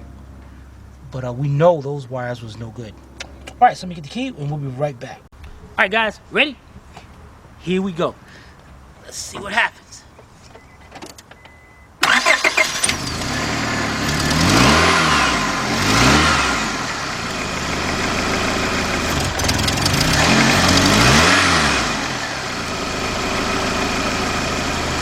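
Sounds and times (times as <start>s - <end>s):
car engine starting and revving: 0.0s - 4.6s, 12.0s - 25.0s.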